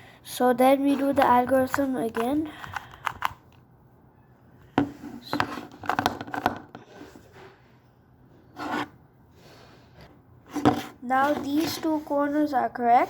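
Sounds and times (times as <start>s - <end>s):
puzzle cube twisting clicks: 2.1s - 3.5s.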